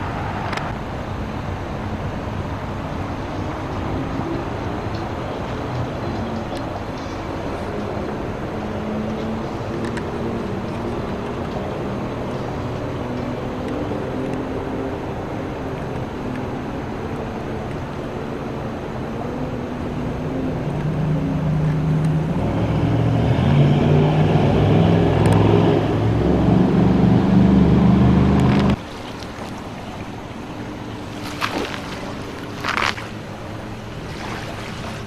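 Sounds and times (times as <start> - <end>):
engine running: 0.0 - 35.0.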